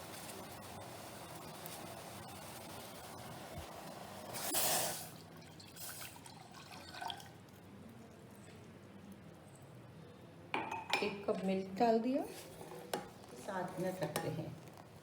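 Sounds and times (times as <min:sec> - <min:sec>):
liquid hissing and splashing: 0:04.3 - 0:05.2
milk pouring into a pan: 0:04.6 - 0:07.5.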